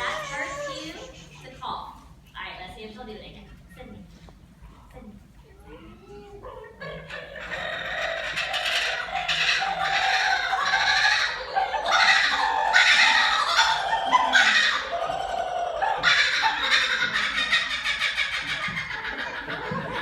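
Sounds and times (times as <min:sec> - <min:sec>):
kookaburra laughing call: 0:06.8 - 0:20.0.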